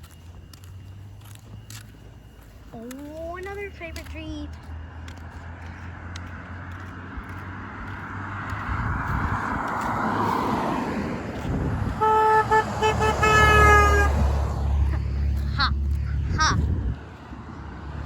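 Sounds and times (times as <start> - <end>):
car approaching: 0.0 - 18.0
car horn honking: 11.8 - 14.6.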